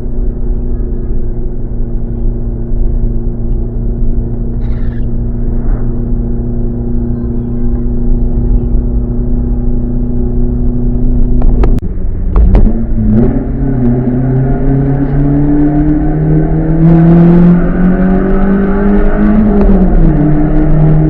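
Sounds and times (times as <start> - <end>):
exhaust cracks: 3.0 - 15.4.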